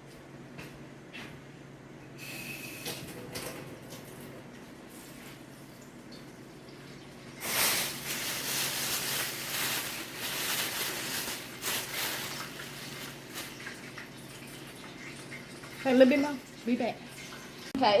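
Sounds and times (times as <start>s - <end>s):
grease sizzling and crackling: 7.4s - 17.6s.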